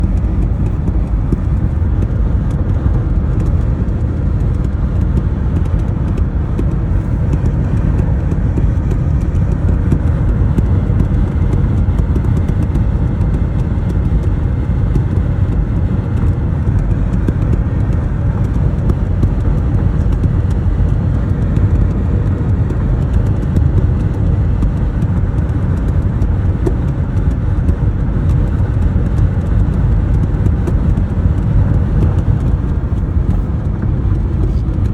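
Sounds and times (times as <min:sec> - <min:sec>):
road and tyre noise: 0:00.0 - 0:34.9
wheel flapping or thumping: 0:00.0 - 0:34.9.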